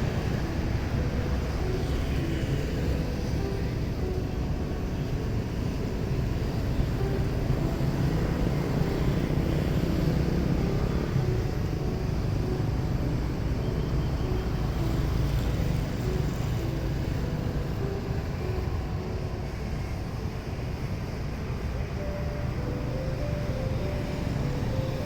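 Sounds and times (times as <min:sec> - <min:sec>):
jet engines running: 0:00.0 - 0:25.0.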